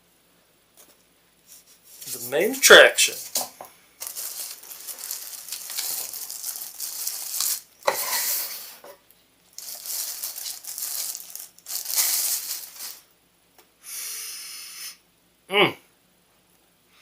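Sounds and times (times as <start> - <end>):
steady hiss: 0.0 - 15.2
plastic packaging crinkling: 2.0 - 8.8, 9.5 - 13.1.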